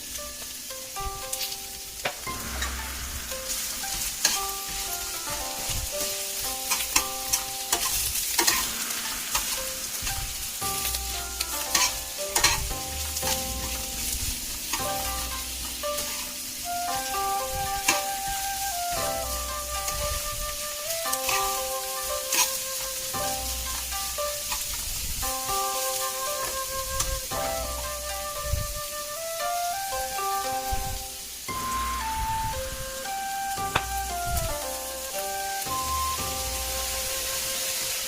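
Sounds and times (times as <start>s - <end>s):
background music: 0.0s - 38.0s
vegetables sizzling in oil: 0.0s - 38.0s
utensil clicking and scraping pan: 6.7s - 10.2s, 10.8s - 16.4s, 21.2s - 21.6s, 22.2s - 22.9s.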